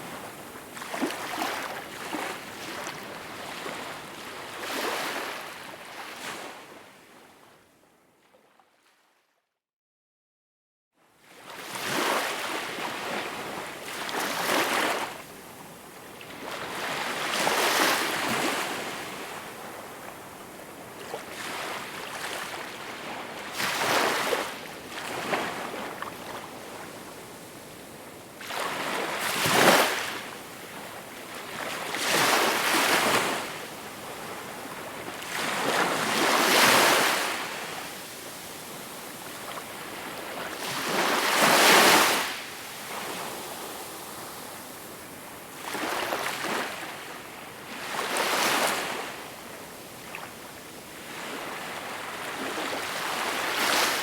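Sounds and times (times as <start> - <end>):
small waves breaking on shore: 28.4 - 54.0.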